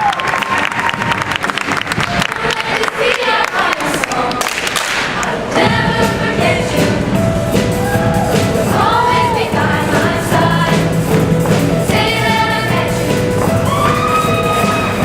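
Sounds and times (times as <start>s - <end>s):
choir singing held notes: 2.1s - 15.0s
instrumental accompaniment with beat: 5.6s - 15.0s.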